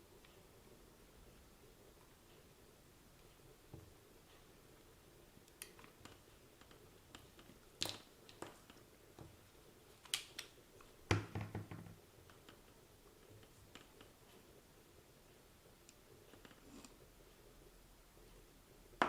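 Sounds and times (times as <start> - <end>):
light clicks and taps of tools: 5.4 - 10.9, 15.8 - 17.0.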